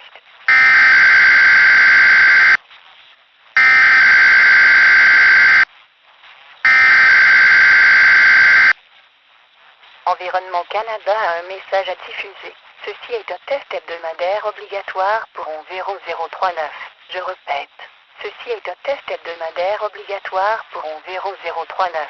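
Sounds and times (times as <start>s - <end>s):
data tone bursts: 0.5s - 2.6s, 3.6s - 5.6s, 6.7s - 8.8s.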